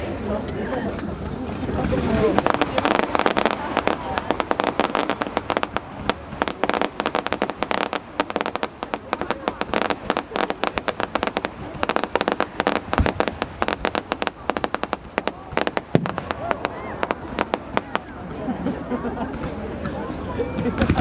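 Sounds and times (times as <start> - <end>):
fireworks crackling bangs: 0.6 - 21.0
deep firework boom: 1.5 - 18.0.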